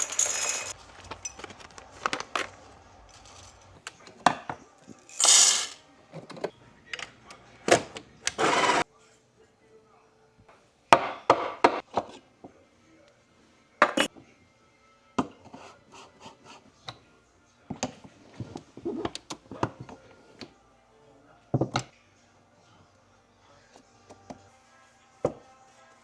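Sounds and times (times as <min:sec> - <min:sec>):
dishes and utensils clattering: 0:00.0 - 0:08.8.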